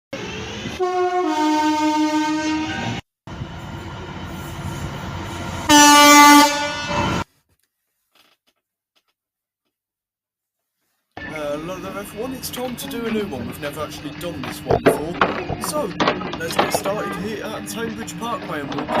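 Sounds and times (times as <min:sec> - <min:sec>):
train running: 0:00.2 - 0:07.3, 0:11.2 - 0:19.0
short train horn blast: 0:00.7 - 0:03.0, 0:05.6 - 0:07.2
two-tone train horn: 0:00.7 - 0:03.0, 0:05.7 - 0:07.2, 0:16.8 - 0:17.6.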